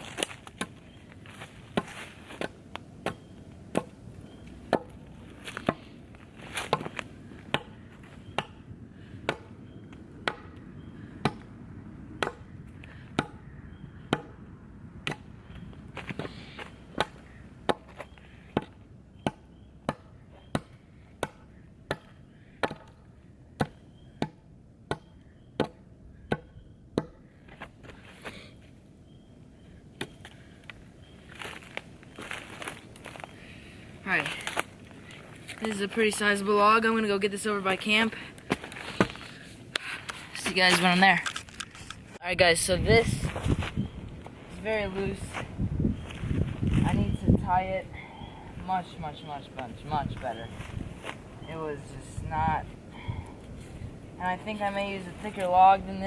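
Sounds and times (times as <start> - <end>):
axe chopping wood: 1.7 - 4.0, 4.7 - 5.0, 6.6 - 8.6, 9.2 - 9.6, 10.2 - 10.6, 11.2 - 11.5, 12.2 - 13.4, 14.1 - 14.4, 15.0 - 15.3, 16.9 - 23.0, 23.6 - 27.2.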